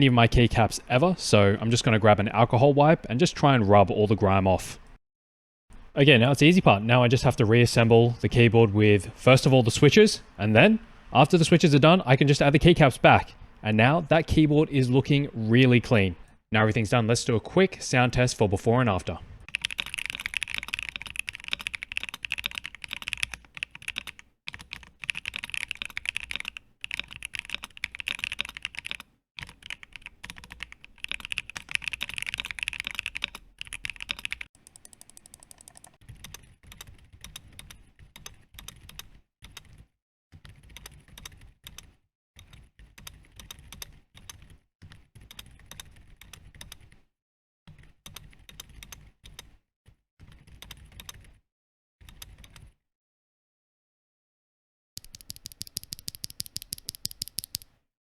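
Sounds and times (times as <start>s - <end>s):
loud clacky keystrokes: 19.5s - 39.8s, 55.0s - 57.7s.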